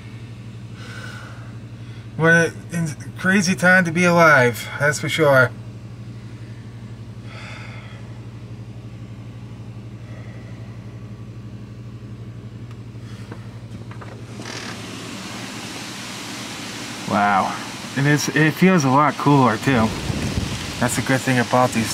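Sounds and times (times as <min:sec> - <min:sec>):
low mechanical hum: 0:00.0 - 0:21.9
wind: 0:13.1 - 0:21.9
heavy rain: 0:14.5 - 0:21.9.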